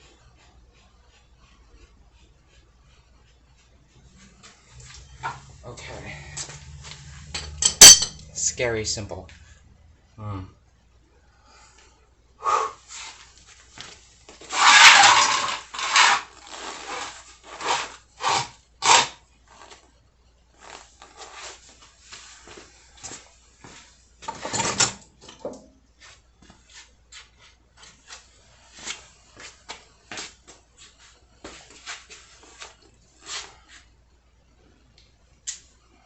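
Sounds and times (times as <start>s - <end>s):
metal rattling scrape: 4.1s - 8.7s, 14.4s - 19.1s
hand tools and metal parts clicking: 6.4s - 8.5s, 14.5s - 17.1s.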